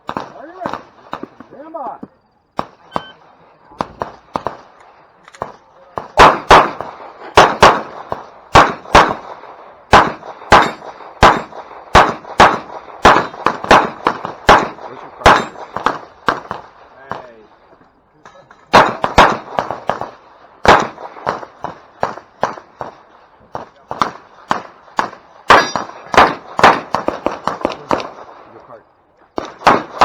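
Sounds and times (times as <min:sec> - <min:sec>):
rapid pistol fire: 0:00.0 - 0:01.5, 0:03.8 - 0:04.8, 0:05.4 - 0:17.4, 0:18.7 - 0:28.6, 0:29.4 - 0:30.0
shot timer beep: 0:02.9 - 0:03.2.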